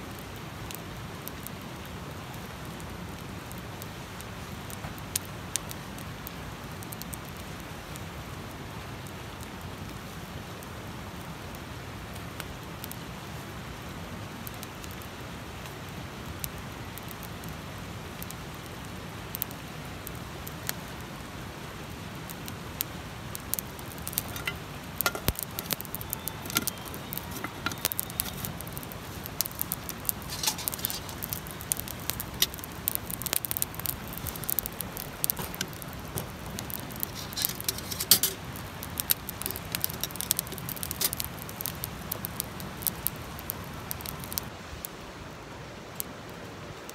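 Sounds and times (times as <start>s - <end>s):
campfire crackling and popping: 0.1s - 13.1s, 14.3s - 45.0s
low rush of fire: 14.2s - 46.9s.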